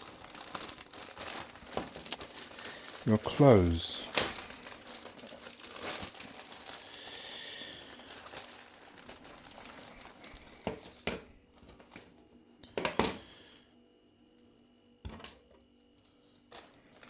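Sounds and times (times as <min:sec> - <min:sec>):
plastic packaging crinkling: 0:00.0 - 0:12.2, 0:16.2 - 0:17.0.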